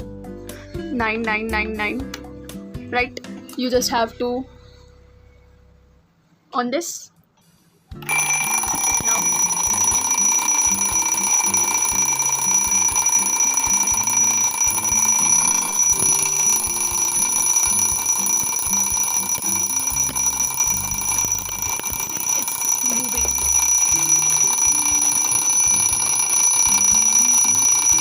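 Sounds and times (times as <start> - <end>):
alarm clock ringing: 8.0 - 28.0.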